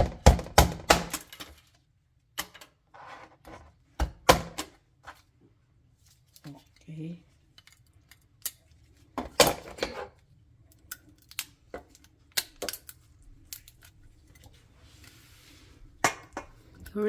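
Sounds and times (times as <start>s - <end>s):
knife chopping crab shells: 0.0s - 1.3s.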